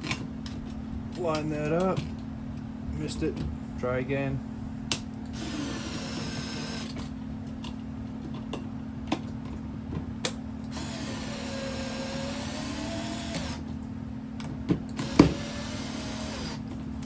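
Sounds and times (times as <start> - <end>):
cordless screwdriver whirring: 5.3 - 7.0, 10.7 - 13.7, 15.0 - 16.6.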